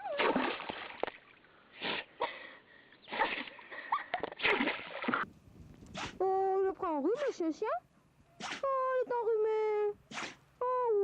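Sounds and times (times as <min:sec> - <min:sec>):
animal sneezing: 0:01.8 - 0:02.1, 0:05.9 - 0:06.2, 0:08.4 - 0:08.7, 0:10.1 - 0:10.4.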